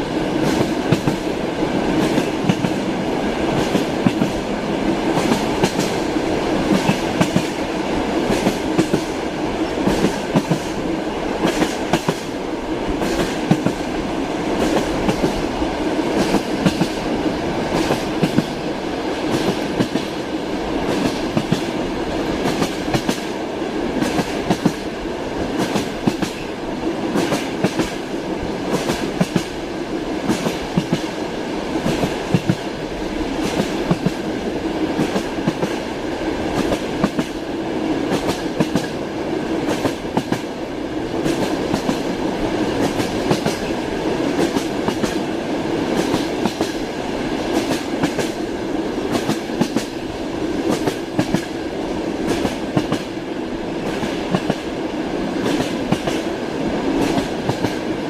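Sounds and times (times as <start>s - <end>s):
railway carriage rumble: 0.0s - 58.0s
train wheels clacking over rail joints: 0.4s - 1.3s, 3.5s - 4.4s, 5.0s - 7.6s, 8.2s - 10.8s, 16.1s - 17.0s, 17.7s - 18.6s, 19.2s - 20.2s, 20.8s - 21.7s, 22.4s - 23.3s, 24.0s - 24.8s, 25.5s - 26.5s, 27.1s - 28.0s, 30.2s - 31.1s, 31.8s - 32.8s, 33.4s - 34.2s, 35.0s - 35.8s, 36.5s - 37.4s, 38.1s - 39.0s, 39.6s - 40.5s, 41.2s - 45.3s, 45.9s - 46.8s, 47.5s - 48.4s, 49.1s - 50.0s, 50.6s - 51.6s, 52.2s - 53.1s, 53.8s - 54.6s, 55.4s - 56.3s, 56.9s - 57.9s.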